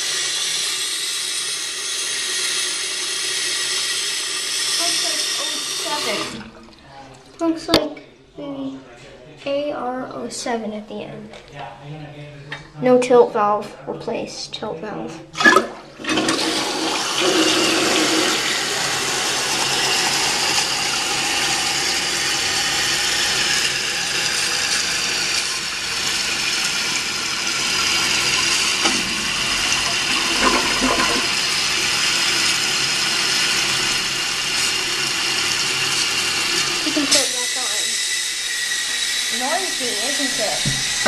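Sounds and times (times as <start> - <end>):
water hissing through fill valve: 0.0 - 7.4, 15.4 - 41.0
toilet flushing: 0.0 - 7.8, 15.3 - 41.0.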